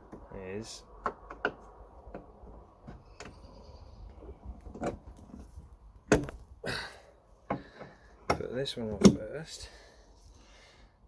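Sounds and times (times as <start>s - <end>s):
gas strut clicking and knocking: 1.0s - 3.4s, 7.5s - 9.2s.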